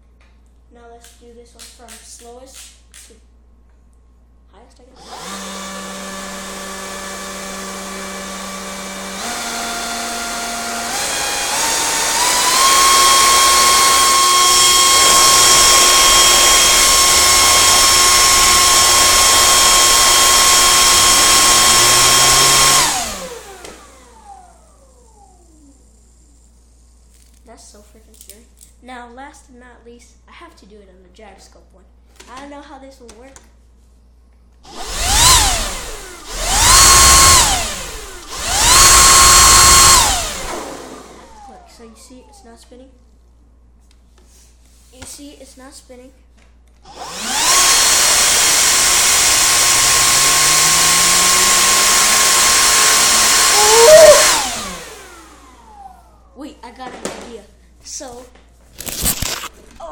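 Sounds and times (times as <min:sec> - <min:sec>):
air blower whining: 0:05.0 - 0:26.2, 0:34.6 - 0:42.4, 0:46.8 - 0:56.4.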